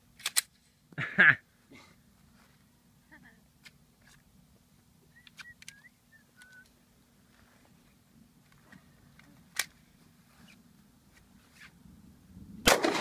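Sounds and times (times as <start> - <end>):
low steady hum: 0.0 - 13.0
distant gunshot: 12.6 - 13.0.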